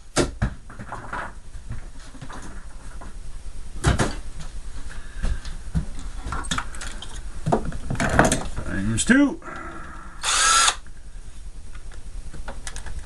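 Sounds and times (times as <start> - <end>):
plastic parts knocking and clattering: 0.4 - 2.6, 6.3 - 8.7.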